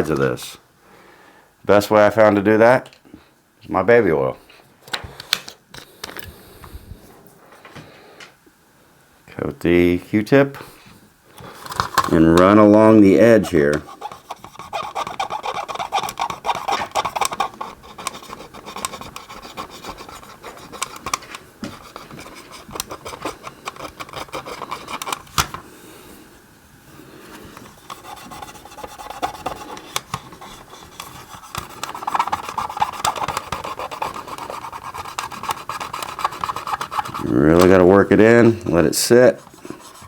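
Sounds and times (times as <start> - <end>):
swab scratching on plastic: 13.2 - 25.3, 27.6 - 40.0.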